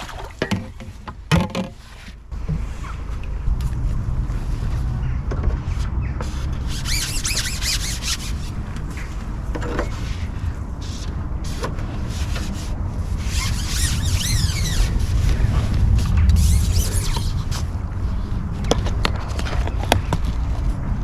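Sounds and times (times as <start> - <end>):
wind buffeting microphone: 2.3 - 7.0, 7.9 - 21.0
squeaky rubbing: 5.7 - 8.6, 13.2 - 17.7.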